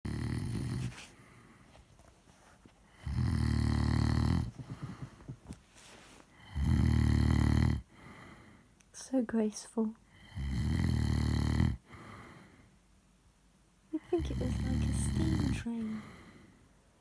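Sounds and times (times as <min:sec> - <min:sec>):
man snoring heavily: 0:00.1 - 0:00.9, 0:03.0 - 0:04.9, 0:06.4 - 0:07.8, 0:10.2 - 0:11.8
quiet breathing: 0:00.2 - 0:09.1, 0:10.0 - 0:12.9, 0:13.9 - 0:17.0.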